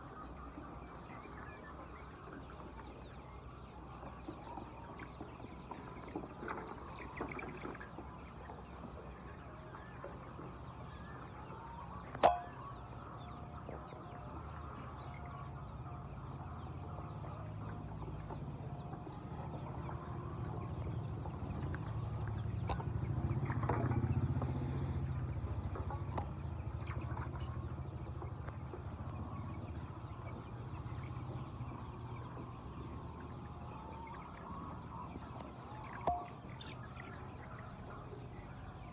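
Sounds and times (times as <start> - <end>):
hens clucking: 0.0 - 38.9
sharp click: 12.2 - 12.6.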